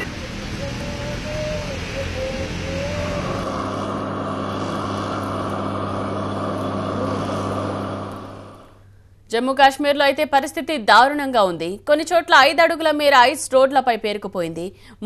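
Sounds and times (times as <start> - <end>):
engine droning: 0.0 - 9.0.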